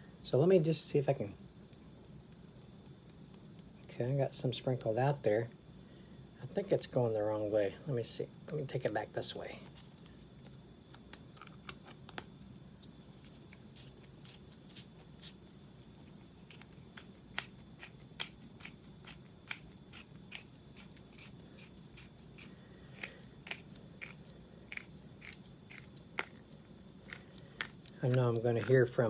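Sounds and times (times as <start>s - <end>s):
spice grinder clicking and crunching beans: 16.4s - 29.0s.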